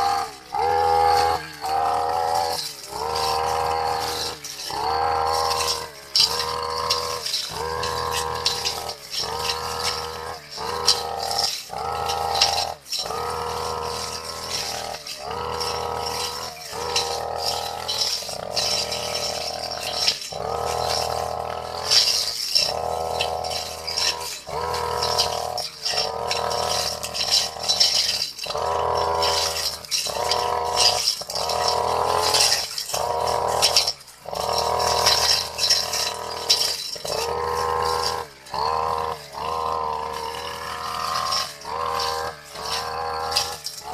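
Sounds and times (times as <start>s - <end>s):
brush cutter engine revving: 0.0s - 43.9s.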